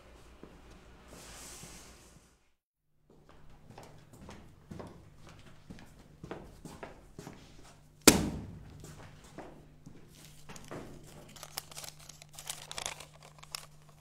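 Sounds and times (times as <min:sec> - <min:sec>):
sharp thump: 0:08.1 - 0:08.7.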